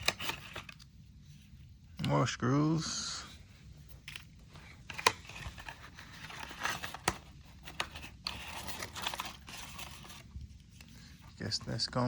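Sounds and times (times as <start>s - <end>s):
plastic packaging crinkling: 4.8s - 11.1s.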